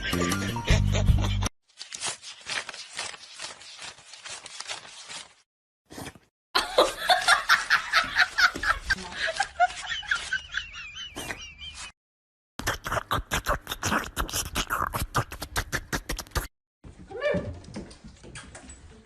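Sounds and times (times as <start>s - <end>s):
laughter in short bursts: 6.6s - 11.9s.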